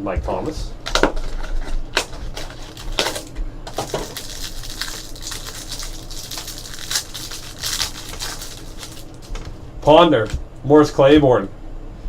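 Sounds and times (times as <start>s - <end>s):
cards and wrappers rustling: 0.8s - 9.4s.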